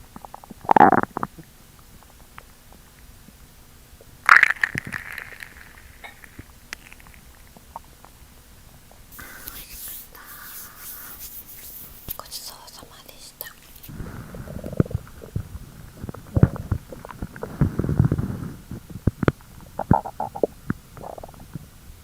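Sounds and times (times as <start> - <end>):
stomach growling: 0.0 - 2.9, 4.0 - 8.0, 13.9 - 21.8
faint small squelches: 4.9 - 21.7.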